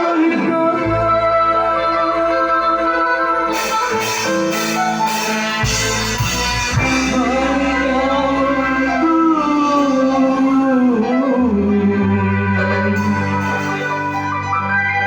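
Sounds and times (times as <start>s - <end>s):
guitar-led band music: 0.0s - 15.0s
drum and cymbal hits: 3.6s - 7.2s.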